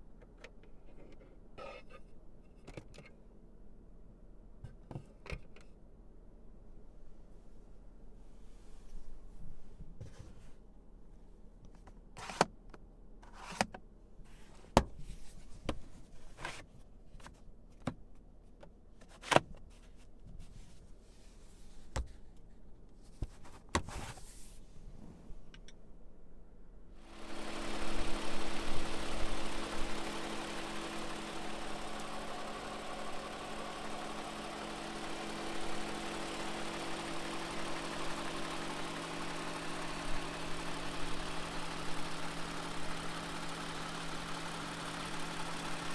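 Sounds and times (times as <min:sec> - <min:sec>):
car engine starting and idling: 0:27.0 - 0:45.9.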